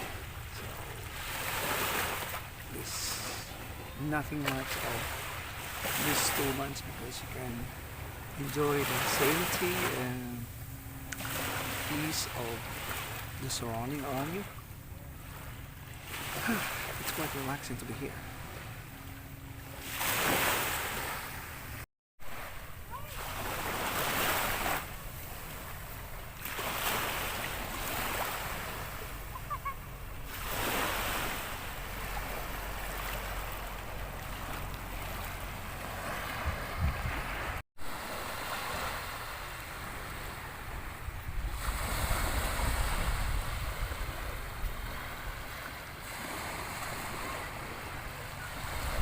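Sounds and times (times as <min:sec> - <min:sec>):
sea waves washing onto beach: 0:00.0 - 0:14.6, 0:15.2 - 0:18.9, 0:19.7 - 0:49.0
wind rumbling on microphone: 0:35.6 - 0:37.6, 0:40.7 - 0:45.5.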